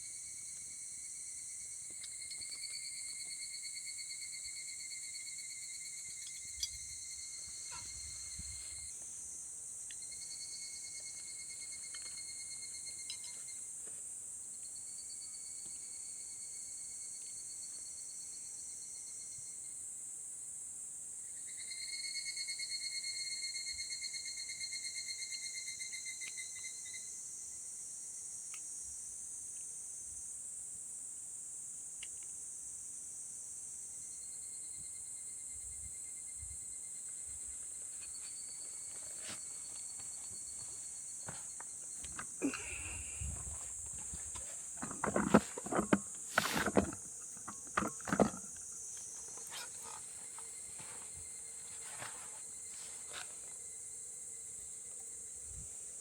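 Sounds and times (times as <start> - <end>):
pulsing insect trill: 0.0 - 13.7, 21.3 - 27.4, 34.0 - 55.8
insects chirring: 0.0 - 56.0
knocks and clatter: 43.9 - 48.6.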